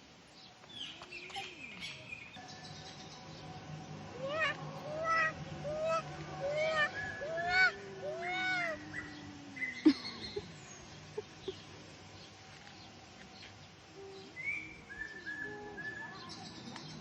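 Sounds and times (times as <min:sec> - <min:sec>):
steady background noise: 0:00.0 - 0:17.0
faint bird chirps: 0:04.2 - 0:17.0.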